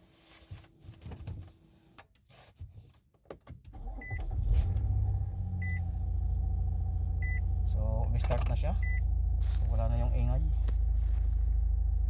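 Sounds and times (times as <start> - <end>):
car engine starting and idling: 3.7 - 12.0
short electronic beeps: 8.8 - 9.0.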